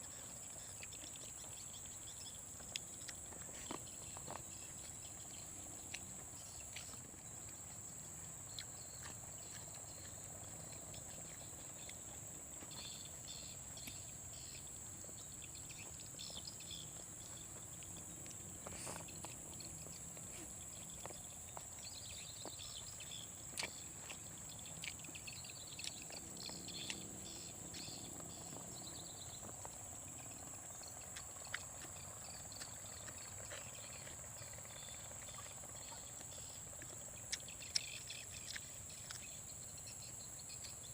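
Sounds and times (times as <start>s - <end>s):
insects droning: 0.0s - 40.9s
rapid trilling chirps: 8.4s - 40.9s.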